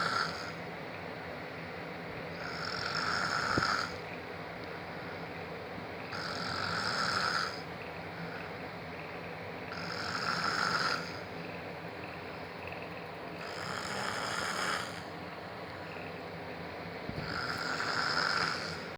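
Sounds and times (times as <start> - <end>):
man snoring: 0.0 - 0.6, 2.4 - 4.0, 6.1 - 7.7, 9.7 - 11.2, 13.4 - 15.1, 17.2 - 18.9
steady background hum: 0.0 - 18.9.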